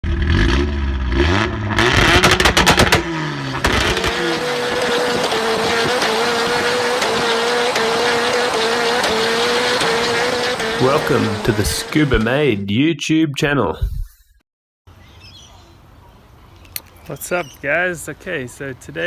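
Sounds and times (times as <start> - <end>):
car engine revving: 0.0 - 12.6
exhaust crackles: 0.0 - 12.6.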